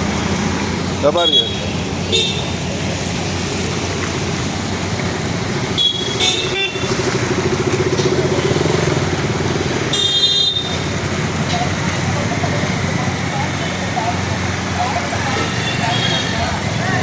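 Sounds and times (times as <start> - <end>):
motorcycle engine passing: 6.8 - 9.9.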